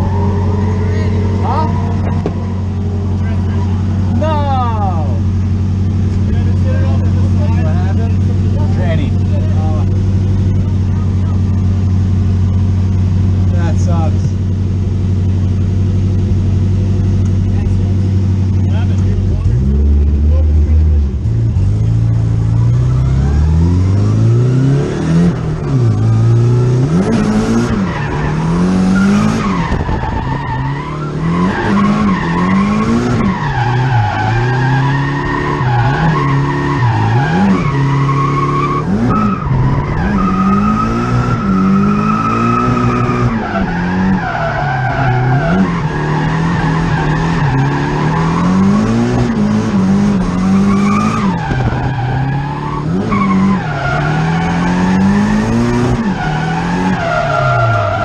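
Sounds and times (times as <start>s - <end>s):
tyres squealing: 0.0s - 4.8s
car engine revving: 0.0s - 58.0s.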